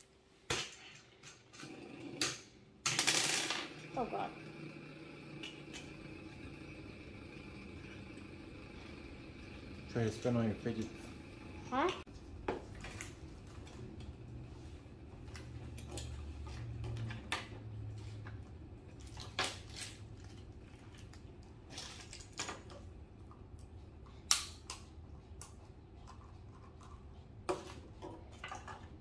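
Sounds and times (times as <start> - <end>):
low hum: 3.4 - 12.4
plastic toys clicking and knocking: 25.5 - 29.0.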